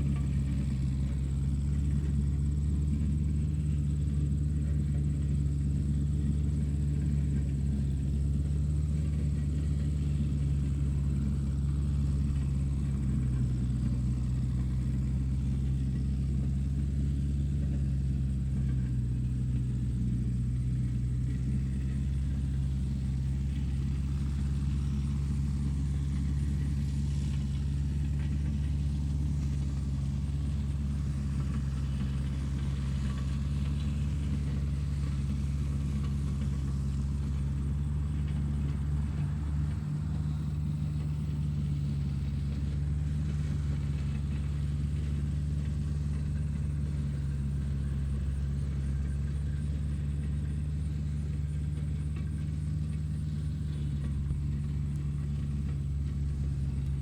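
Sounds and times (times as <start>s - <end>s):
low engine rumble: 0.0s - 57.0s.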